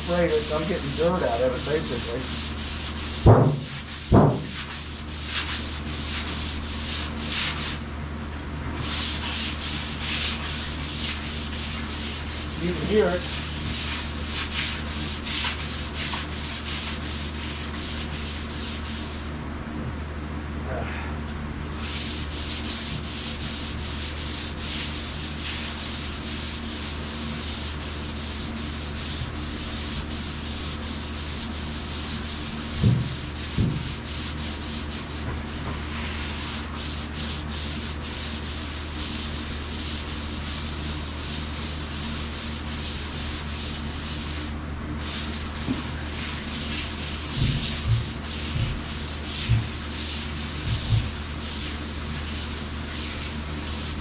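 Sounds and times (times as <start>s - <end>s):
sandpaper scraping metal: 0.1s - 7.8s, 8.8s - 19.2s, 21.8s - 54.0s
soft knocks: 32.8s - 33.9s.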